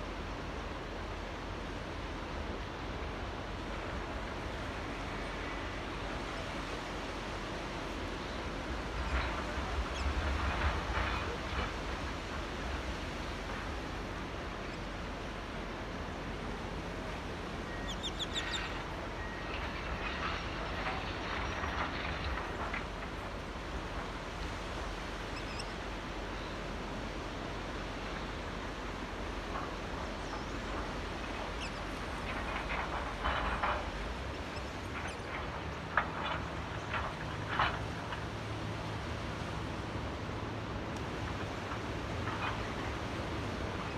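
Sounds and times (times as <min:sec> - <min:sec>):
bird chirping: 0:17.7 - 0:18.7.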